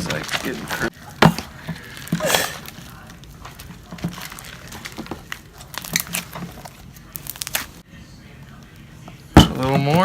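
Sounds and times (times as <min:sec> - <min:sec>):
slime squelching: 0:00.0 - 0:07.8.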